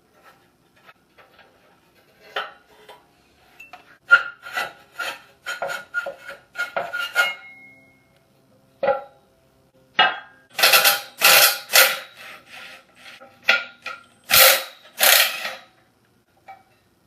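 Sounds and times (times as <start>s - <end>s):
metal parts clanking and scraping: 10.1s - 15.7s.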